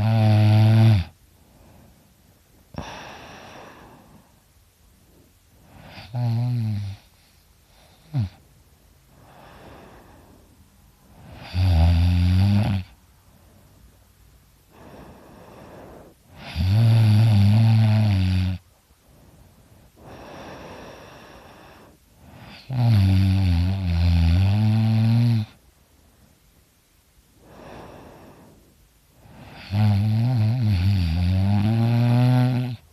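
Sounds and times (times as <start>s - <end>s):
person snoring loudly: 0.0s - 1.2s, 5.8s - 7.1s, 11.2s - 13.0s, 16.3s - 18.6s, 22.4s - 25.6s, 29.2s - 32.9s
faint breaths: 1.1s - 6.2s, 6.9s - 11.6s, 12.8s - 16.6s, 18.6s - 22.9s, 25.4s - 30.7s.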